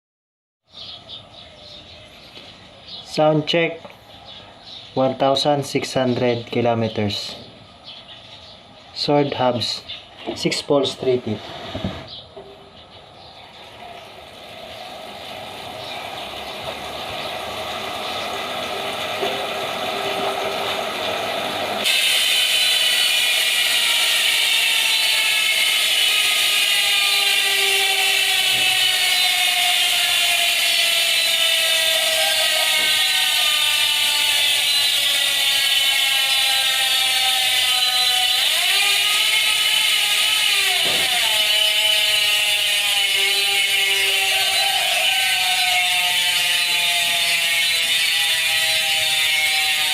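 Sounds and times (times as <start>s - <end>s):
bicycle hub ratcheting buzz: 14.7s - 49.9s.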